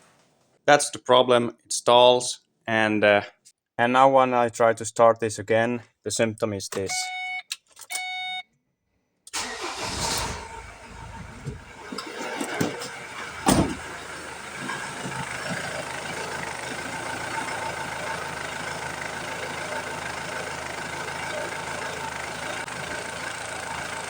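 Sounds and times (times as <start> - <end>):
van engine starting and idling: 9.3 - 24.0.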